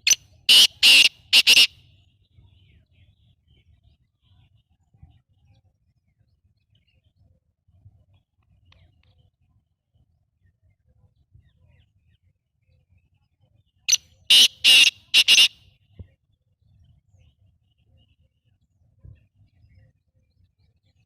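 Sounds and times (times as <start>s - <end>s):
bird harsh grating call: 0.0s - 1.8s, 14.3s - 15.6s.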